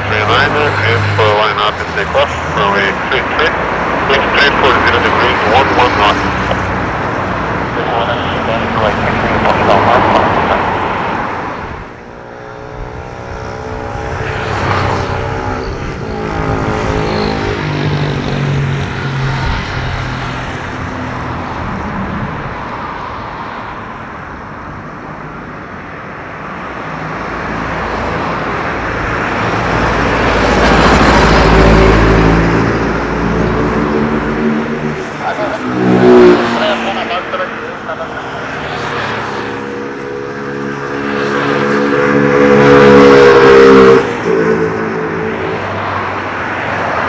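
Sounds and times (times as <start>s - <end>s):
jet engines roaring at take-off: 0.0s - 47.0s.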